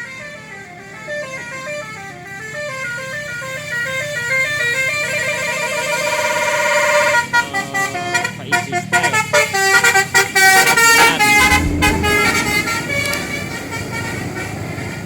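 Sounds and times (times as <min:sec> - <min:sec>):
bus engine: 0:05.8 - 0:14.7.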